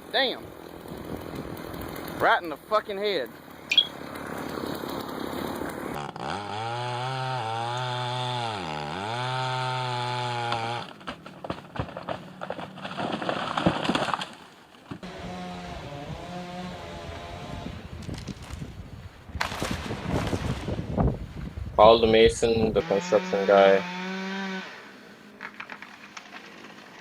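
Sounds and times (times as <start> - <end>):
chainsaw engine running: 0.0 - 12.8, 15.0 - 18.6, 22.8 - 26.9
small engine running: 0.4 - 2.4, 3.3 - 10.9, 15.0 - 17.8, 22.8 - 25.2
sharp knocks and cracks: 10.4 - 15.1, 19.4 - 20.8, 25.4 - 27.0.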